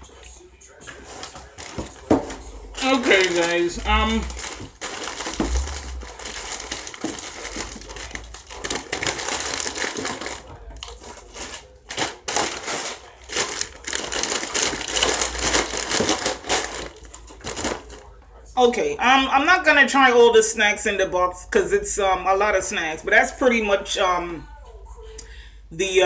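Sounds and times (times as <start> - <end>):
plastic wrappers crinkling: 0.1 - 18.1.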